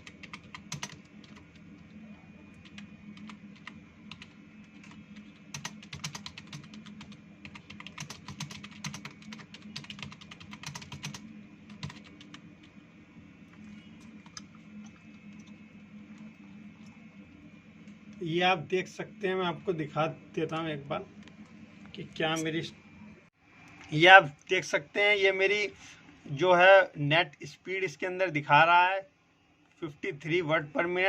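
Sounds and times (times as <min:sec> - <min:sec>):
fast typing on keyboard: 0:00.0 - 0:01.6, 0:02.6 - 0:12.4, 0:13.5 - 0:16.5.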